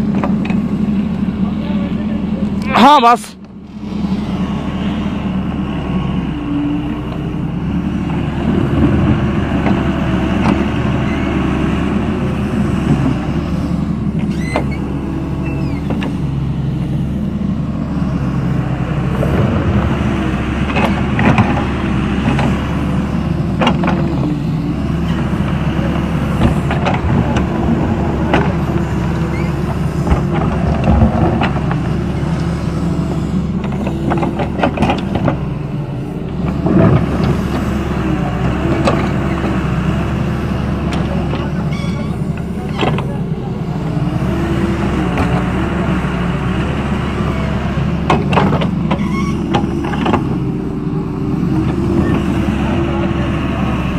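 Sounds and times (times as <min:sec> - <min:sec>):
excavator diesel engine running: 0:00.0 - 0:53.9
sharp clicks and knocks: 0:23.6 - 0:24.1, 0:26.4 - 0:27.6, 0:33.6 - 0:35.4.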